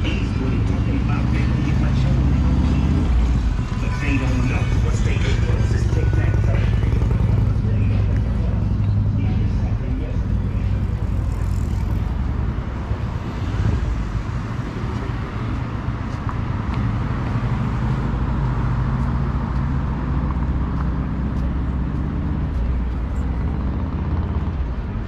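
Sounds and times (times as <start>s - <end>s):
constant low rumble: 0.0s - 2.1s, 3.0s - 17.4s.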